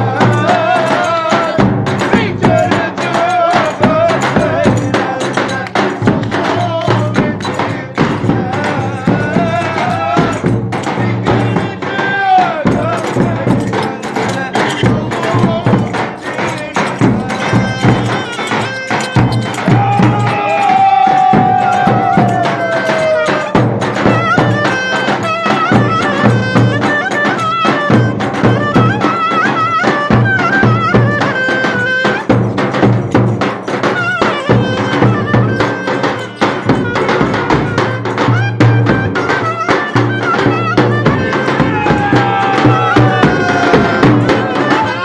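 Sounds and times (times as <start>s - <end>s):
fast steady drumming: 0.0s - 45.0s
high wavering folk melody: 12.8s - 45.0s.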